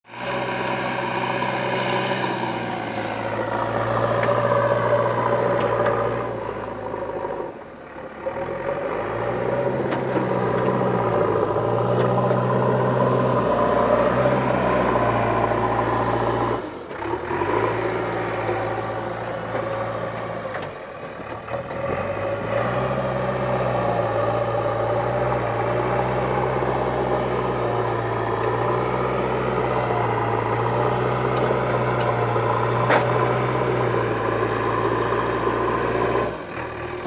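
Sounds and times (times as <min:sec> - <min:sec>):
backhoe diesel engine running: 0:00.1 - 0:37.0.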